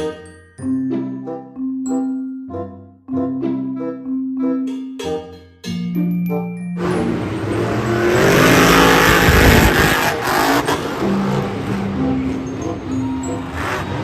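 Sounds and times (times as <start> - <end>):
race car passing by: 6.8 - 14.0.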